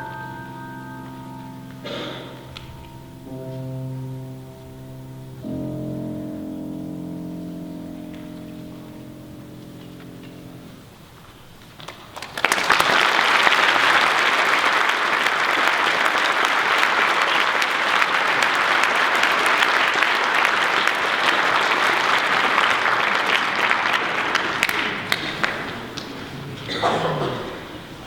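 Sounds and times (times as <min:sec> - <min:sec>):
audience applauding: 0:11.8 - 0:27.6.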